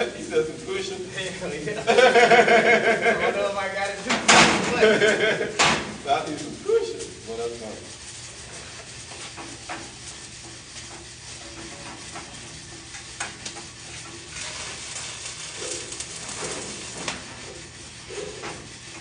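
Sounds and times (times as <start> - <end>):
electric arc welding: 0.0 - 19.0
sharp welding pops: 4.1 - 6.0, 13.0 - 18.6.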